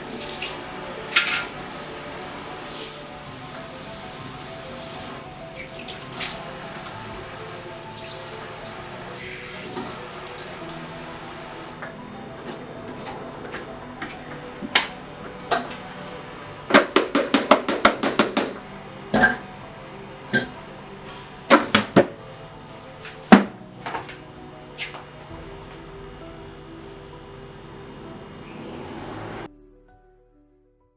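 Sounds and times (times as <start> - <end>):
running tap water: 0.0 - 29.5
background music: 0.0 - 30.9
kitchenware clinking and knocking: 16.6 - 19.5, 20.3 - 20.6, 21.5 - 22.2.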